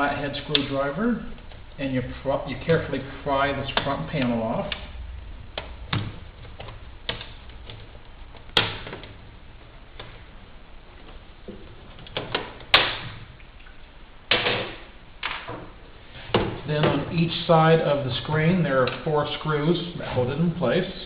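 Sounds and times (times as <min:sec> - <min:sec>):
sharp plastic snaps: 0:12.0 - 0:13.2.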